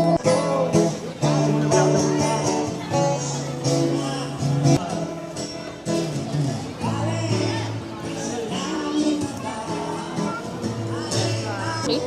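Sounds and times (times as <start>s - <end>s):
acoustic guitar: 0.0s - 12.0s
person singing: 6.8s - 12.0s.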